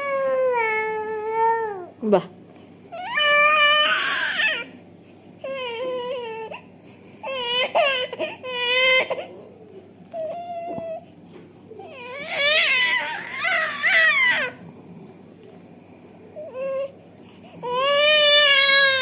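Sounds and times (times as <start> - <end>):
baby crying: 0.0 - 1.9, 2.9 - 4.8, 5.4 - 11.0, 11.7 - 14.6, 17.6 - 19.0.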